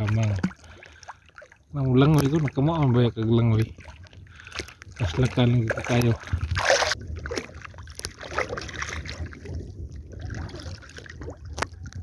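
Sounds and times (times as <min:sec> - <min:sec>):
water sloshing and splashing: 0:00.0 - 0:12.0
wind rumble on microphone: 0:01.8 - 0:12.0.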